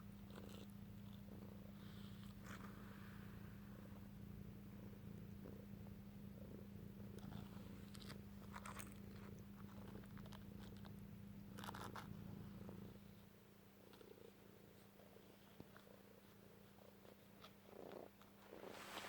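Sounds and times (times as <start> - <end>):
cat purring: 0.0 - 19.0
brush strokes through fur: 18.4 - 19.0.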